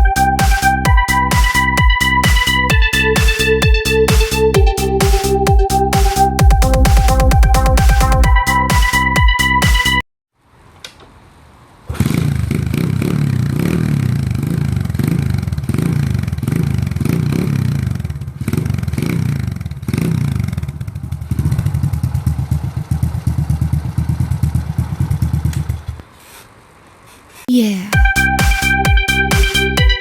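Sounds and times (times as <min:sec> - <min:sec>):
motorcycle engine revving: 0:11.9 - 0:26.0.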